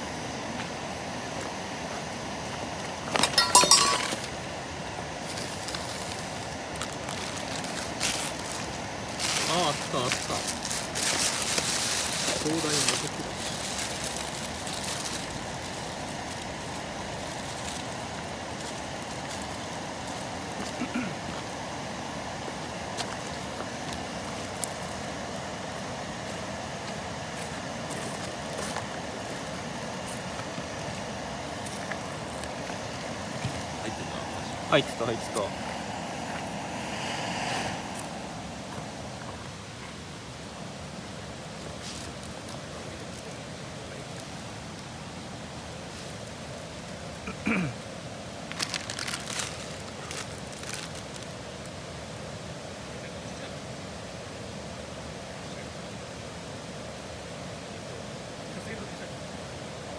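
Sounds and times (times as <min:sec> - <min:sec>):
camp stove burner hissing: 0:00.0 - 0:48.6
cookware clinking: 0:03.2 - 0:04.3.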